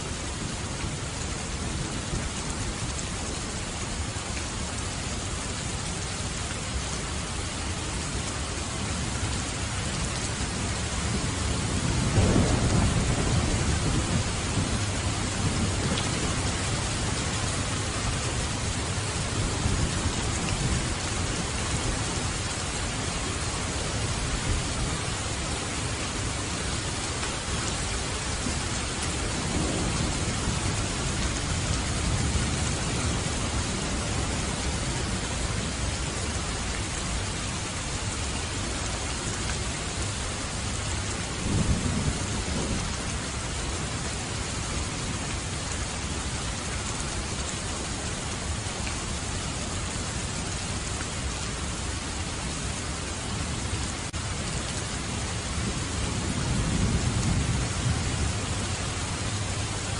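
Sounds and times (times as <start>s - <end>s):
steady rain falling: 0.0s - 59.9s
thunder rumbling: 11.1s - 21.5s, 27.6s - 35.3s.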